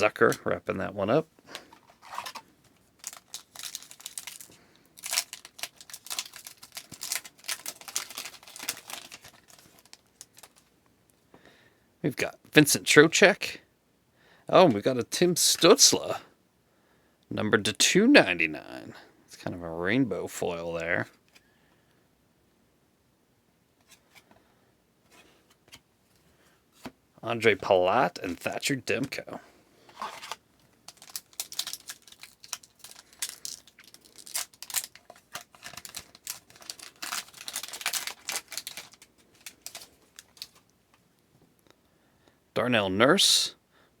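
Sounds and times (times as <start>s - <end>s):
foil wrapper crinkling and tearing: 0.0s - 0.3s, 1.5s - 10.7s, 30.0s - 40.7s
trading cards clicking and rustling: 1.5s - 10.7s, 29.9s - 40.6s.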